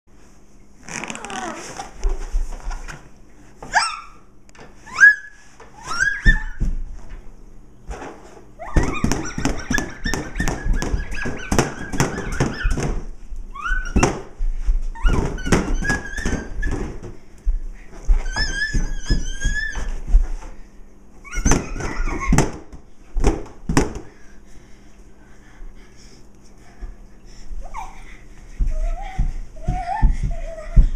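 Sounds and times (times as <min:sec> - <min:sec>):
rubber balloon squeaking: 0:00.8 - 0:02.0, 0:04.8 - 0:06.6, 0:08.6 - 0:14.3, 0:14.9 - 0:17.1, 0:18.1 - 0:20.1, 0:21.2 - 0:22.6.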